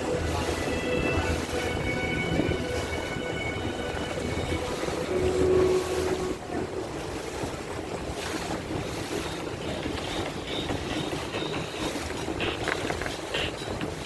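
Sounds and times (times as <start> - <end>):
low rumble: 0.0 - 10.1
water against hull: 0.0 - 14.0
wind on microphone: 0.0 - 14.0.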